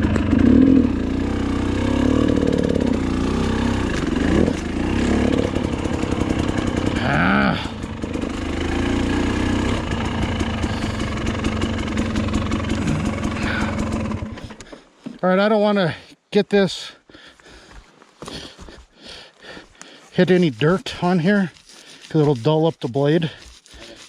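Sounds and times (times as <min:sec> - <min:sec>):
dirt bike engine revving: 0:00.0 - 0:14.7.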